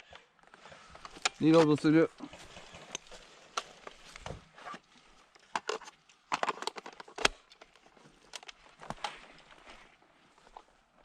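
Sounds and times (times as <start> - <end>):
magazine clicks and rattles: 0.0 - 4.3, 5.2 - 9.2.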